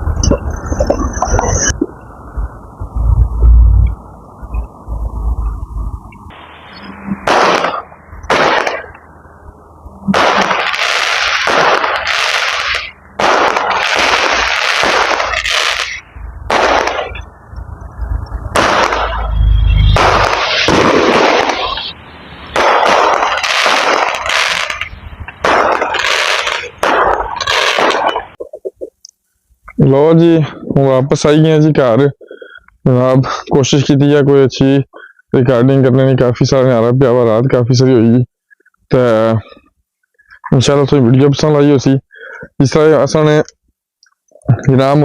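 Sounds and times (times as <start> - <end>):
fireworks bursts: 6.3 - 17.6, 18.3 - 28.9
deep firework boom: 18.5 - 21.9.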